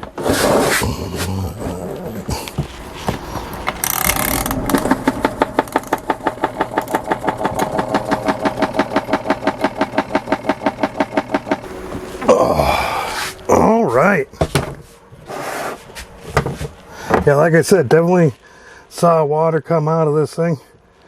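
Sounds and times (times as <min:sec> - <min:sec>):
washing machine spinning: 0:01.9 - 0:17.5.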